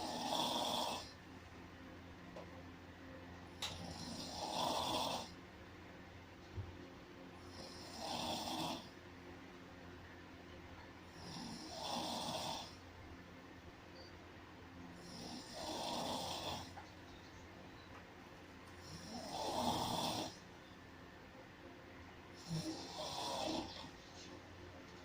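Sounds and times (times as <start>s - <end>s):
person snoring: 0.0s - 1.2s, 3.7s - 5.3s, 7.4s - 8.9s, 11.1s - 12.8s, 15.0s - 16.8s, 18.8s - 20.4s, 22.4s - 23.9s.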